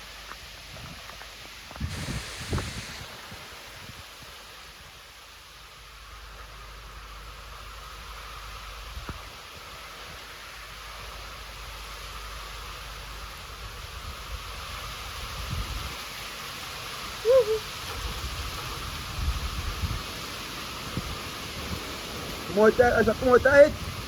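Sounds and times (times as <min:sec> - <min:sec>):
heavy rain: 0:00.0 - 0:24.0
hurricane wind: 0:00.0 - 0:24.0
wind buffeting microphone: 0:00.4 - 0:05.0, 0:13.4 - 0:16.2, 0:17.2 - 0:24.0.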